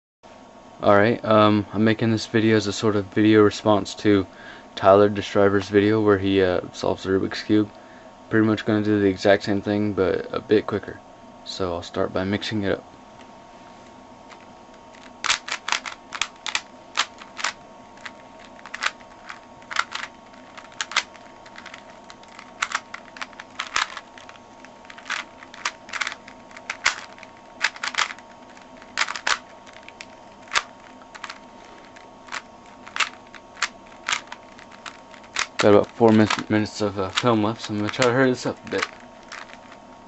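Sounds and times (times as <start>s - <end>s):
plastic puzzle cube clicking: 14.3s - 36.5s, 37.9s - 39.8s.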